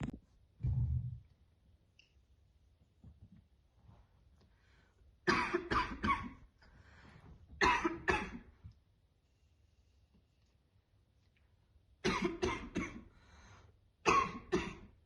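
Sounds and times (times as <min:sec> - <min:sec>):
woman coughing: 0:05.3 - 0:06.4, 0:07.6 - 0:08.4, 0:12.0 - 0:13.0, 0:14.1 - 0:14.9.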